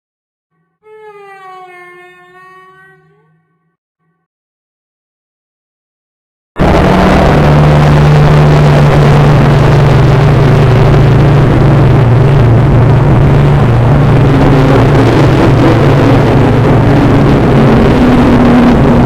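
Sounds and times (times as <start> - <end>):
deep humming creature drone: 6.6 - 19.0.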